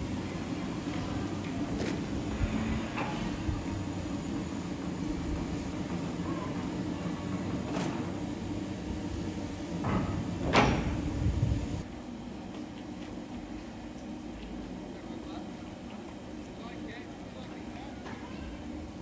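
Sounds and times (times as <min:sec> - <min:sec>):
locomotive low hum: 0:00.0 - 0:11.9.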